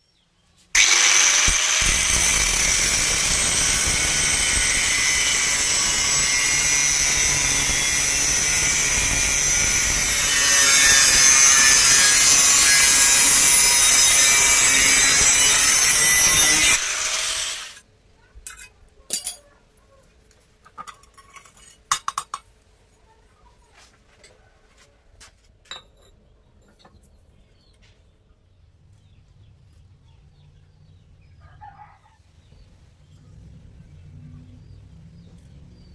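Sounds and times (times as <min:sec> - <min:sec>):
welding arc hissing and crackling: 0:00.8 - 0:17.8.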